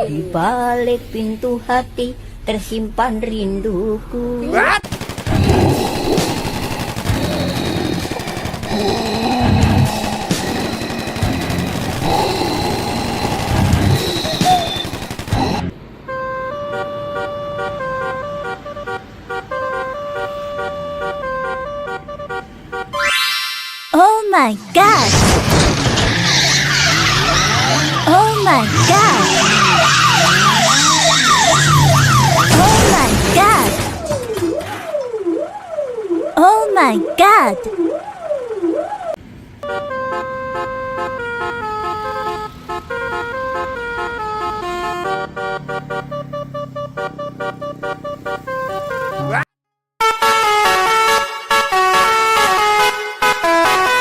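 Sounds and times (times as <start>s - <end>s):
musical bus air horn: 16.0s - 23.0s, 39.6s - 49.4s, 50.0s - 54.0s.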